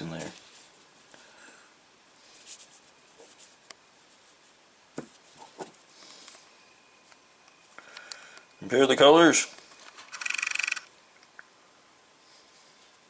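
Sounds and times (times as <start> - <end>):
soft rustling: 0.0 - 1.3, 2.1 - 8.0.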